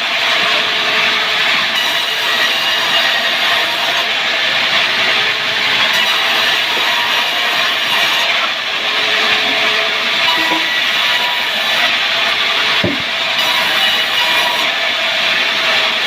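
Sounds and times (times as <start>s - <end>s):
powered wood saw running: 0.0s - 16.0s.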